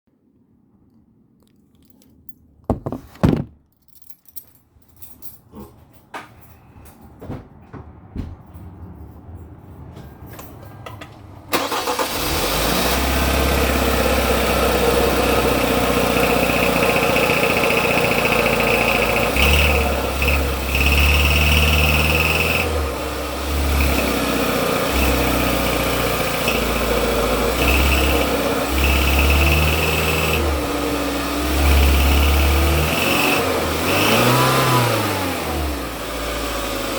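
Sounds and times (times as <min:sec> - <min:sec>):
car engine idling with rattle: 0:11.6 - 0:33.9.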